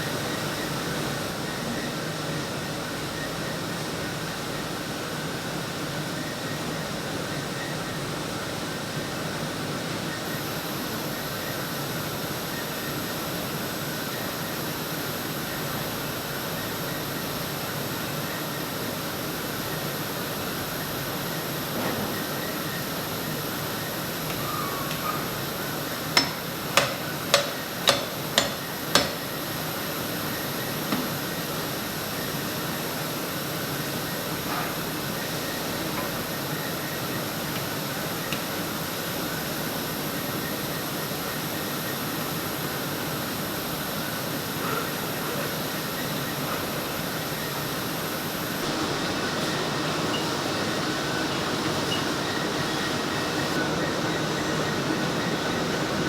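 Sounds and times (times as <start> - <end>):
factory machinery humming: 0.0 - 56.0
high machine whine: 45.6 - 56.0.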